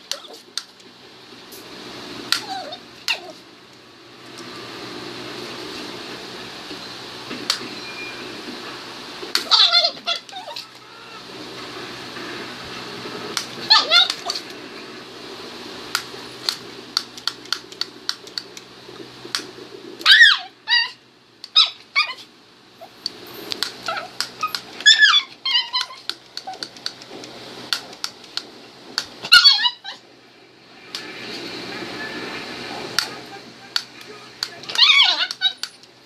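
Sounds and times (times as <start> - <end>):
small dog squealing: 2.3 - 3.4, 9.4 - 11.3, 13.6 - 14.4, 20.0 - 21.0, 21.6 - 23.0, 23.8 - 26.7, 29.2 - 30.0, 34.7 - 35.7
sharp clicks: 15.9 - 18.7, 26.0 - 29.1.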